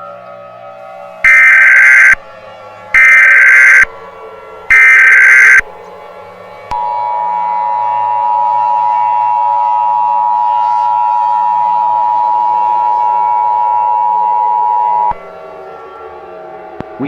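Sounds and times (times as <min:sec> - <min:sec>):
steady two-tone alert: 0:01.3 - 0:02.2, 0:03.0 - 0:03.9, 0:04.7 - 0:05.6.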